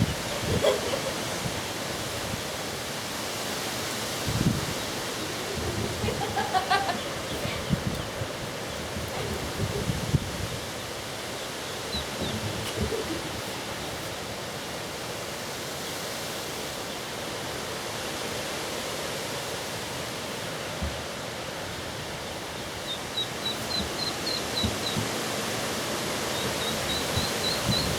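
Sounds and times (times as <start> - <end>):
ducklings peeping: 0.0 - 1.5, 4.4 - 14.3, 21.8 - 25.3, 26.2 - 27.9
steady outdoor hiss: 0.0 - 27.9.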